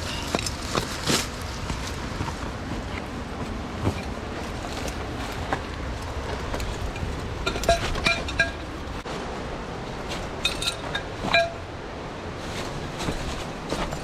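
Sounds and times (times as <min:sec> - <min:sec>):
mountain stream rushing: 0:00.0 - 0:14.0
small metal clinks and jingles: 0:10.4 - 0:11.6.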